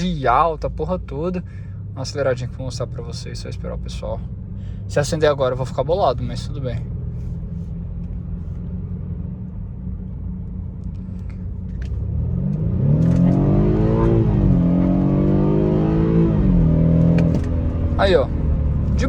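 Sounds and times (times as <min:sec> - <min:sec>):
car engine accelerating: 0:00.0 - 0:19.0.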